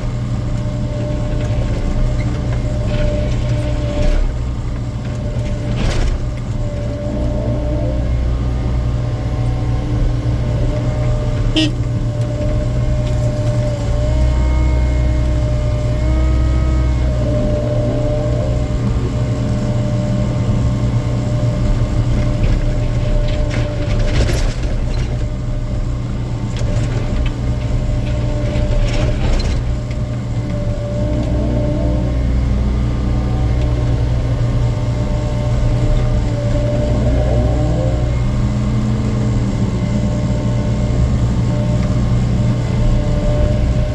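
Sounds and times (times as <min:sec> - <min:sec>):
diesel engine under load: 0:00.0 - 0:43.9.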